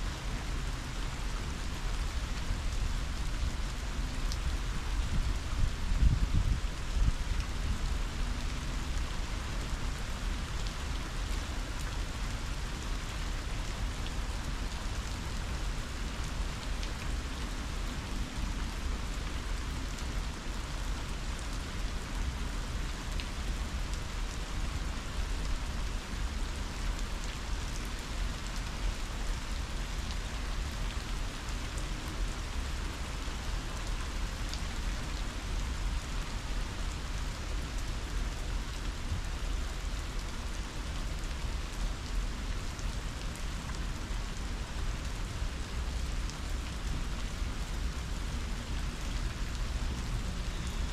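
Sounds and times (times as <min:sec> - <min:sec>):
heavy rain falling: 0:00.0 - 0:50.9
strong wind rumble: 0:05.1 - 0:06.7.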